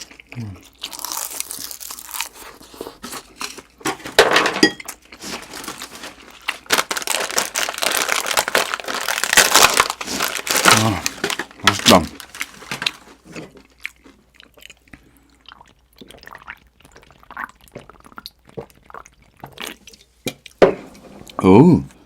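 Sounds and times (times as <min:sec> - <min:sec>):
crunchy chewing: 0:00.0 - 0:03.7.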